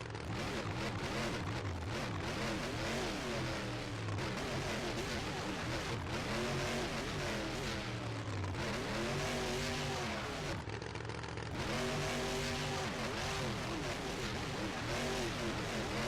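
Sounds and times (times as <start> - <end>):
vehicle engine revving: 0.0 - 16.0.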